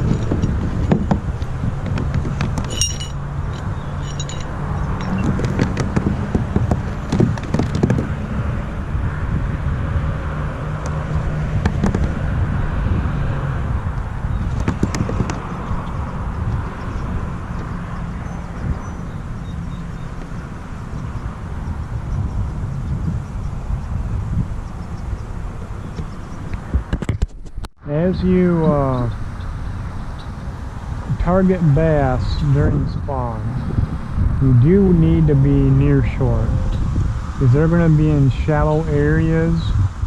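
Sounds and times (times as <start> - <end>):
wind rumble on microphone: 0.0 - 40.0
light clinks: 2.4 - 5.7.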